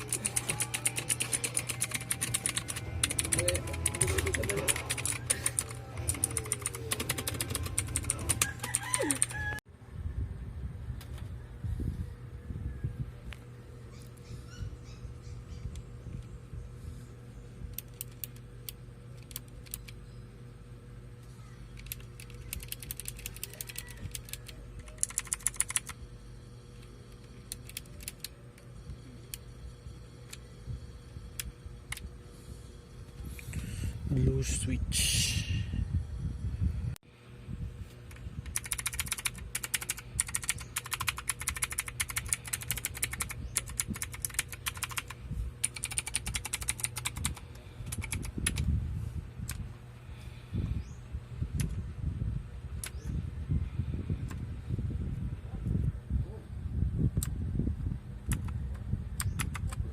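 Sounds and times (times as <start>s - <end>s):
clicky mechanical keyboard typing: 0.0s - 9.4s, 17.7s - 20.0s, 21.7s - 26.0s, 27.1s - 28.4s, 38.4s - 48.7s, 58.3s - 58.6s, 59.2s - 59.8s.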